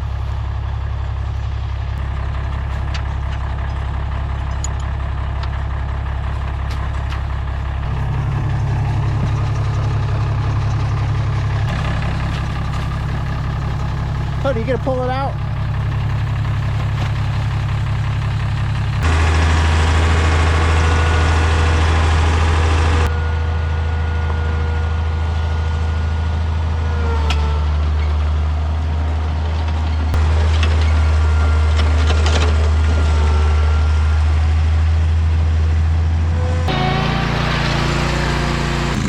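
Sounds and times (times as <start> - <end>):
lawn mower engine running: 0.0 - 26.8, 36.1 - 39.0.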